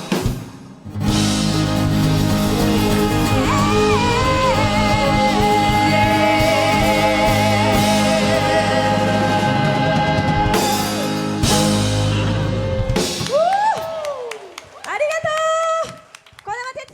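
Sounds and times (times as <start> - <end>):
drum and cymbal hits: 0.0 - 14.0
live band playing: 0.0 - 14.0
woman singing a long note: 3.0 - 11.1.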